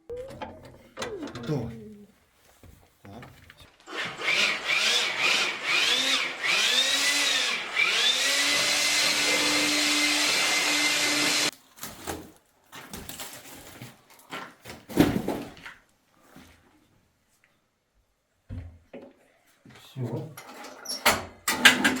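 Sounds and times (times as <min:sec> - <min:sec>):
electric motor with air rush: 0:03.9 - 0:11.5.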